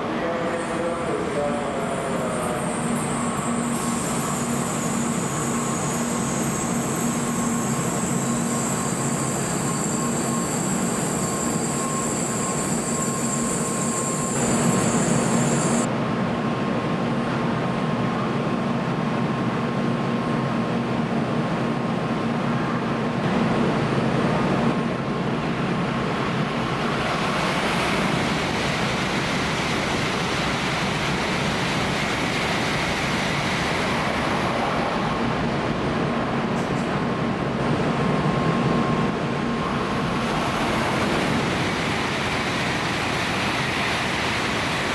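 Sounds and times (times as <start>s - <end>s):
train rail rumble: 23.3s - 44.9s.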